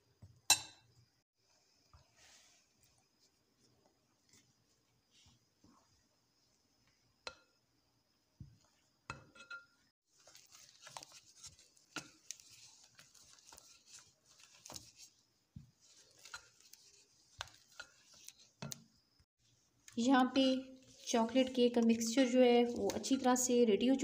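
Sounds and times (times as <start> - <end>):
spatula scraping a mixing bowl: 10.1 - 18.7.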